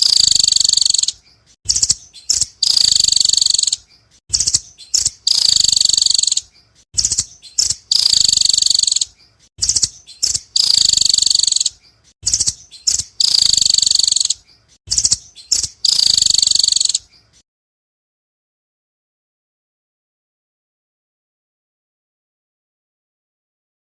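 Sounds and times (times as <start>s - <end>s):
bird high-pitched trills: 0.0s - 17.4s.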